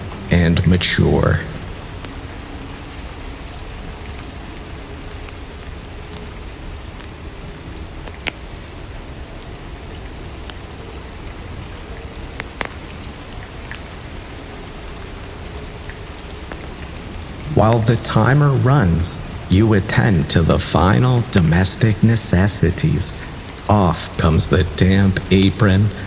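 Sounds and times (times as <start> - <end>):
steady rainfall: 0.0 - 26.0
drops ticking: 17.4 - 26.0.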